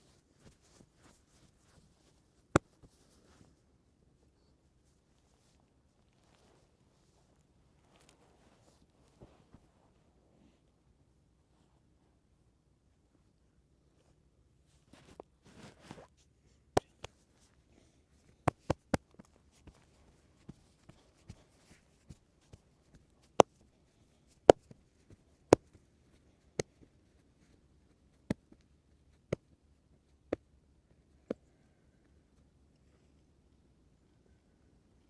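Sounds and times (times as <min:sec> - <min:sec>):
rustle of hands: 0:00.0 - 0:10.8, 0:14.0 - 0:30.2
hands snapping and slapping in massage: 0:02.5 - 0:03.1, 0:18.4 - 0:21.4, 0:22.0 - 0:23.7.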